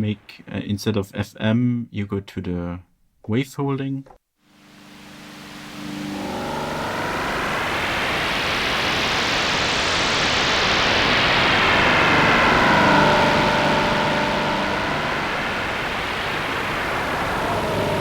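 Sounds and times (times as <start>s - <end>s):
faint held synth tones: 4.5s - 9.6s, 11.4s - 18.0s
noisy rumbling synthesizer texture: 4.5s - 18.0s.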